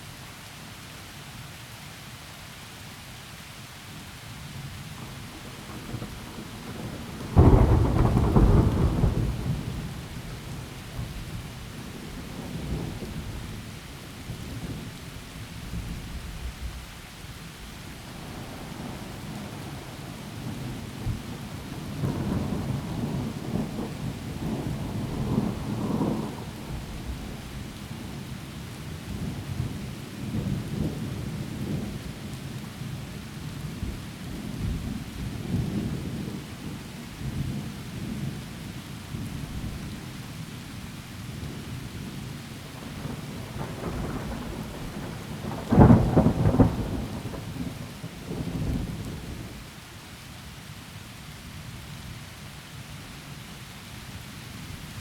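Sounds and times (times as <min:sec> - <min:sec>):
heavy rain: 0:00.0 - 0:55.0
thunder rolling: 0:05.0 - 0:14.9, 0:42.6 - 0:49.6
sharp thunderclap: 0:05.4 - 0:13.6, 0:42.8 - 0:49.6.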